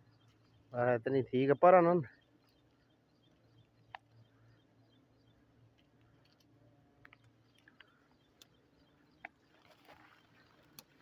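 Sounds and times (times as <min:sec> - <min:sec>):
faint sharp clicks: 0:05.7 - 0:08.6, 0:10.6 - 0:11.0.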